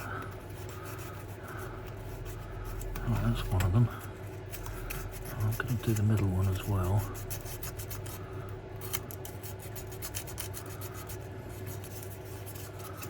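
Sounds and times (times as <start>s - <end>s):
emery cloth scratching metal: 0.0s - 13.0s.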